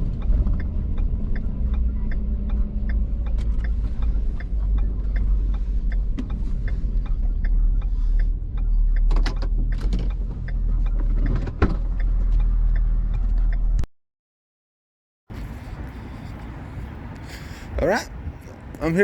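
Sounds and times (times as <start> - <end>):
truck engine and road rumble: 0.0 - 13.9, 15.3 - 19.0
light regular ticks: 0.1 - 13.8.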